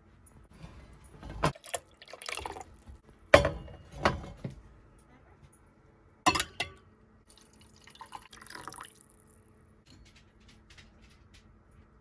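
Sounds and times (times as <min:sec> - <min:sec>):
liquid pouring: 0:00.6 - 0:02.9, 0:07.3 - 0:09.4.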